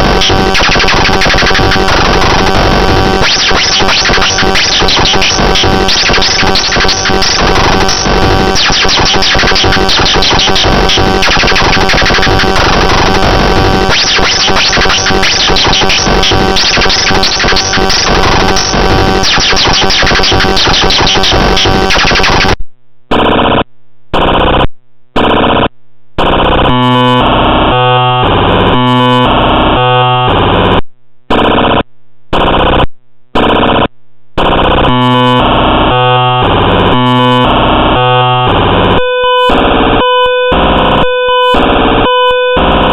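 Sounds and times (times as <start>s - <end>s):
choppy stepped tones: 0.0s - 25.6s
glitchy synthetic buzzing: 0.0s - 42.9s.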